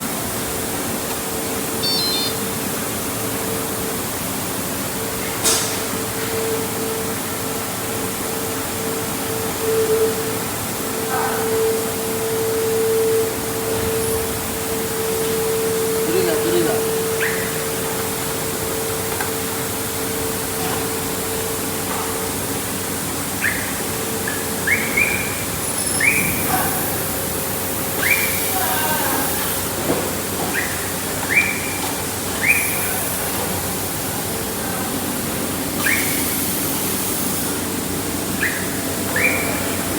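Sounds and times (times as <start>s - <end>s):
machine hum: 0.0s - 5.1s
factory machine hum: 0.0s - 39.9s
short high beeps: 1.8s - 2.5s
short rising chirps: 1.8s - 2.5s
faint held tone: 1.8s - 2.6s.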